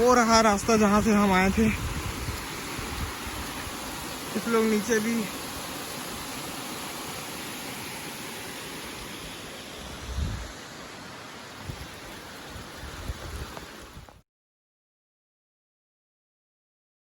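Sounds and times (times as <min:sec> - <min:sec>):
waterfall roaring: 0:00.0 - 0:14.0
low rumbles on microphone: 0:09.9 - 0:10.5.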